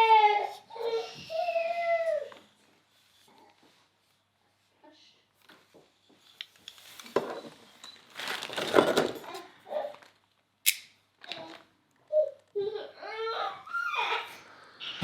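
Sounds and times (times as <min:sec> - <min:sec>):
rustling and clatter: 0:05.4 - 0:10.3.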